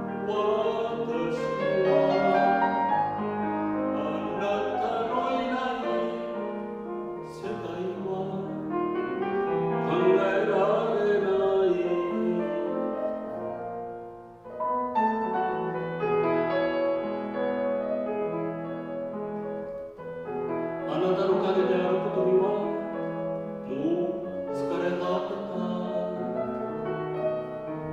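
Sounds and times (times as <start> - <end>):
man singing classical style: 0.0 - 14.2, 19.9 - 27.9
piano accompaniment: 0.0 - 27.9.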